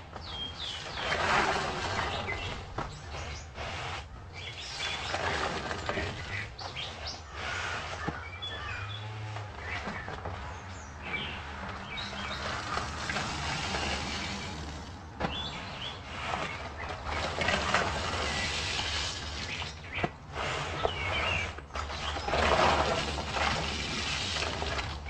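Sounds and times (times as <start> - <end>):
birds chirping: 0.1 - 24.5
sponge squishing and suds crackling: 10.5 - 25.0.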